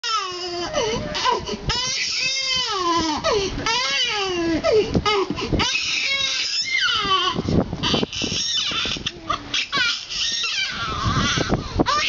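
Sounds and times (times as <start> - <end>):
baby crying: 0.0 - 12.0
catches of breath: 4.6 - 5.6, 11.5 - 11.9.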